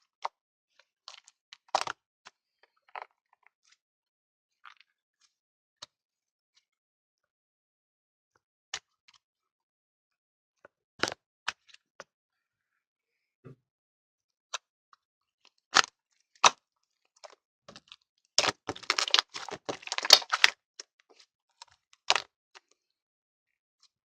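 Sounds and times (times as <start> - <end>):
slime popping and crackling: 18.4 - 20.5.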